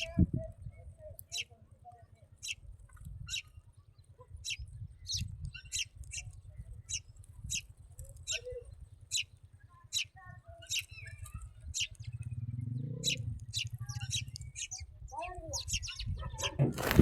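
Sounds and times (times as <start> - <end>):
small birds chirping: 0.0 - 17.0
steady low rumble: 10.9 - 15.1.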